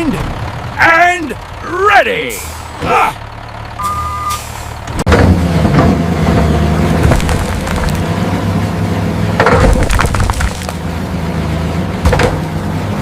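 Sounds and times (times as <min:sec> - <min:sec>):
heavy diesel engine running: 0:00.0 - 0:13.0
short beep: 0:03.8 - 0:04.4.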